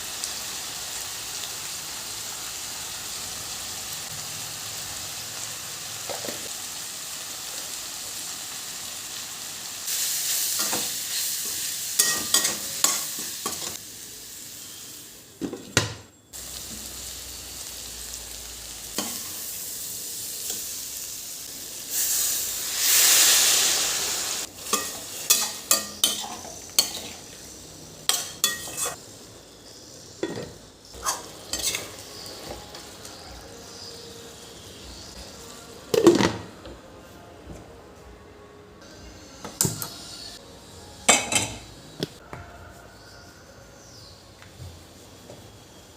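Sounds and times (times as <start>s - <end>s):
food sizzling in a pan: 0.0s - 15.4s, 16.3s - 36.1s.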